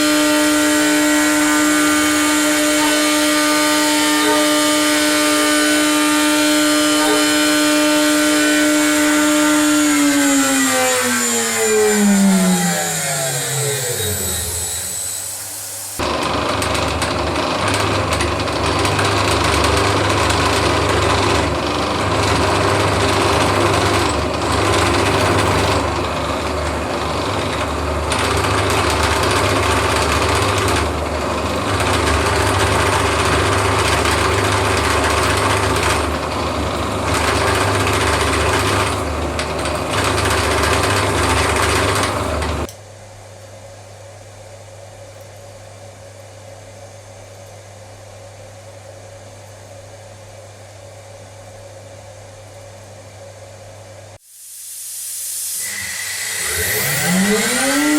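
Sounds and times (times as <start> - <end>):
mill cutting metal: 0.0 - 42.7, 55.4 - 57.9
steady whirring hum: 54.9 - 57.9.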